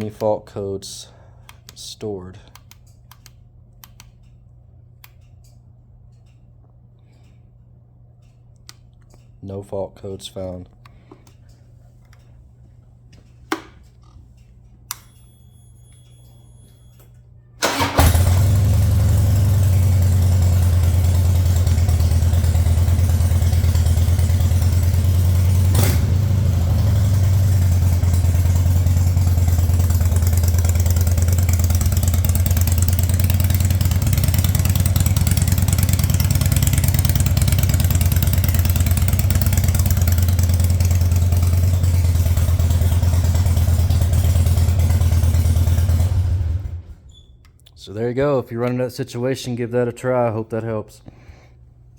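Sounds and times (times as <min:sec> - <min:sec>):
motorcycle engine idling: 0:17.7 - 0:46.9.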